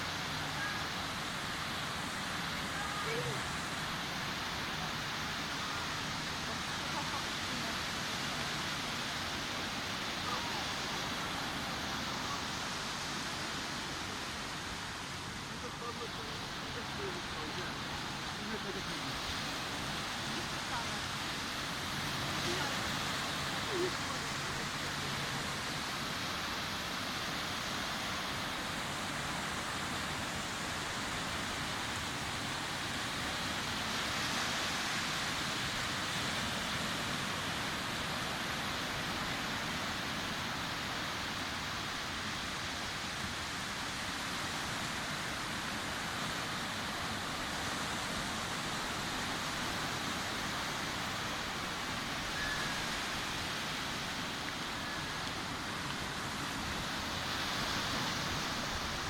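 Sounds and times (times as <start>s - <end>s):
surf washing on a beach: 0.0s - 59.0s.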